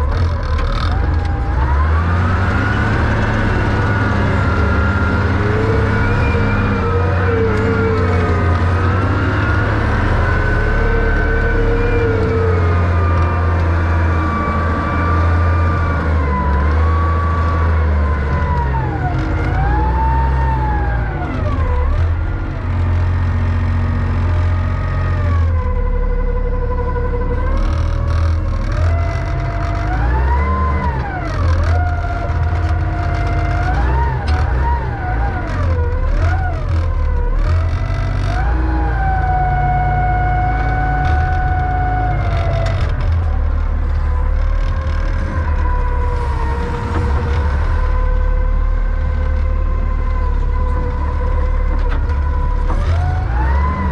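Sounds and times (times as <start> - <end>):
hydraulic whine: 0.0 - 53.9
loader engine rumble: 0.0 - 53.9.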